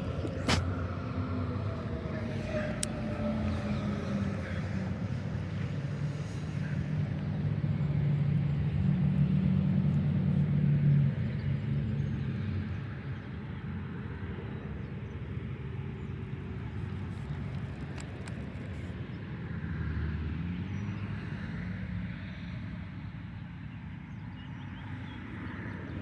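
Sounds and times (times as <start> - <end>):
vehicle engine humming: 0.0 - 12.2
outdoor background noise: 0.0 - 26.0.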